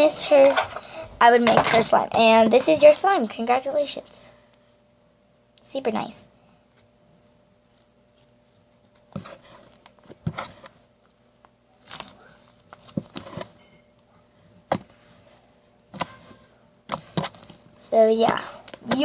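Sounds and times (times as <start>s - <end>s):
crinkly rustling: 7.2s - 13.7s.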